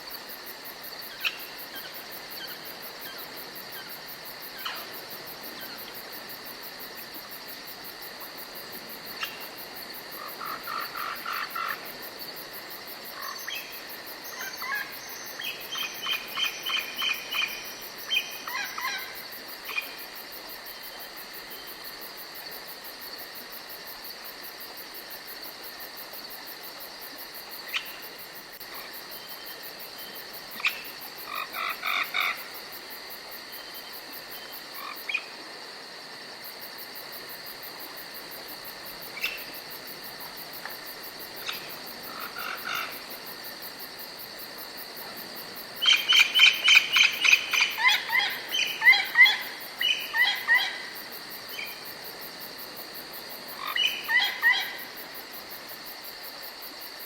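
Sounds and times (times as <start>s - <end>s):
high insect trill: 0.0s - 57.0s
frogs pulsed calls: 13.2s - 20.0s, 40.6s - 43.4s, 45.7s - 51.8s, 53.5s - 55.1s.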